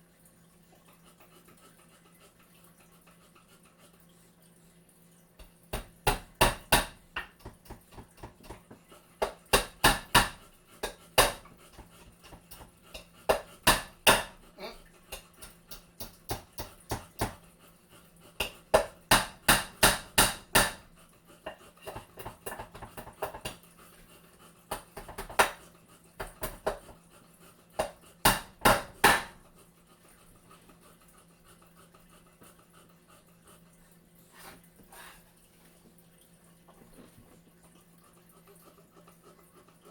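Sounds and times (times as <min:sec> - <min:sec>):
hammer striking nails into wood: 0:09.2 - 0:10.4, 0:18.8 - 0:20.8.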